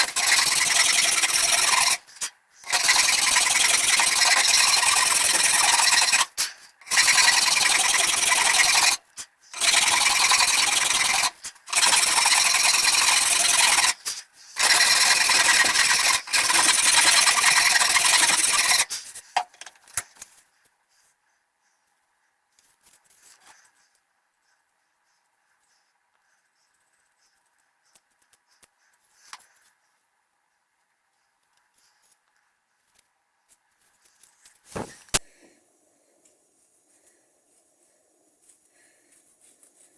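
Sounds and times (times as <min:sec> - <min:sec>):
rasp on wood: 0:00.0 - 0:19.1.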